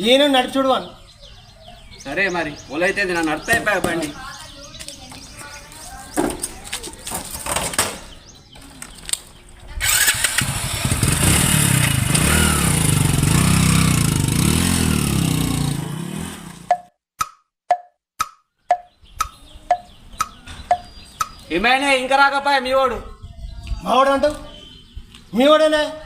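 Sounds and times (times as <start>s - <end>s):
motorcycle engine running: 9.8s - 16.8s.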